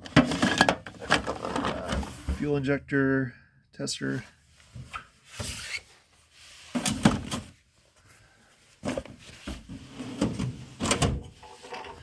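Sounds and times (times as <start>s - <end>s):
drawers knocking and rattling: 0.0s - 2.4s, 8.9s - 12.0s.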